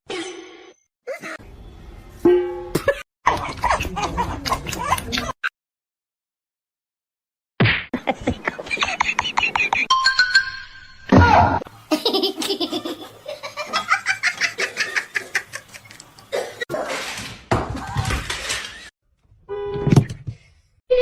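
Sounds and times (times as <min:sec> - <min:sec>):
laughter in quick bursts: 0:02.8 - 0:05.4, 0:08.0 - 0:09.9.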